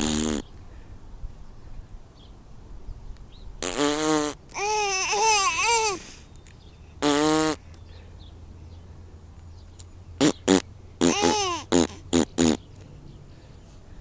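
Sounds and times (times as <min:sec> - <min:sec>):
lip-buzzing raspberry: 0:00.0 - 0:00.5, 0:03.6 - 0:06.0, 0:07.0 - 0:07.7, 0:10.2 - 0:12.7
baby laughing: 0:04.5 - 0:06.1, 0:11.0 - 0:12.1.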